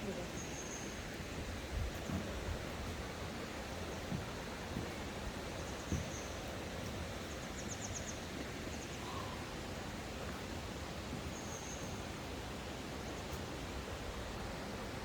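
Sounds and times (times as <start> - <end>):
small bird calling: 8.8 - 9.5.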